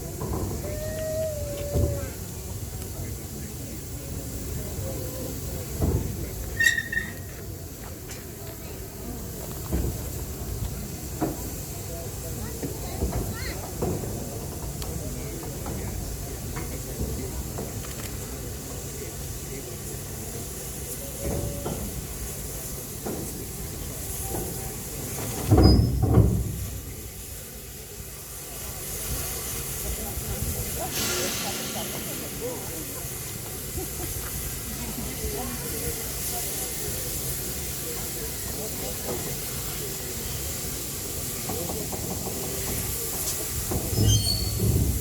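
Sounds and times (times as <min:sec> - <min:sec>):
steam locomotive hissing: 0:00.0 - 0:45.0
brief high squeaks: 0:06.6 - 0:07.3, 0:44.0 - 0:44.7.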